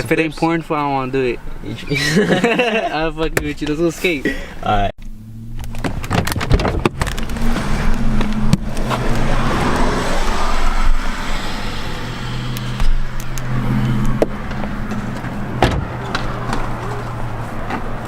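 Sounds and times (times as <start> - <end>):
car engine humming: 3.7 - 18.0.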